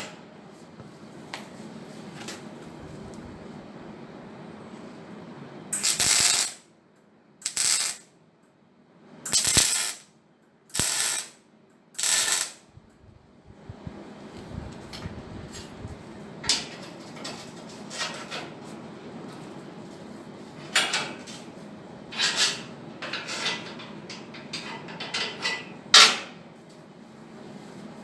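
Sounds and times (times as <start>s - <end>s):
low steady hum: 0.0s - 11.1s, 11.8s - 17.7s.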